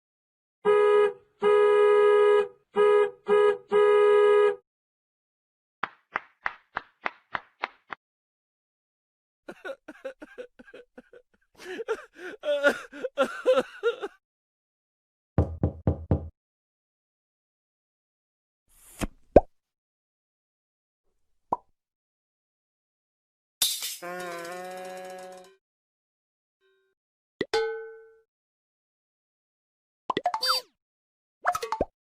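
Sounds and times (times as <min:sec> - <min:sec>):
comedy horn honks: 0:00.6 - 0:04.6.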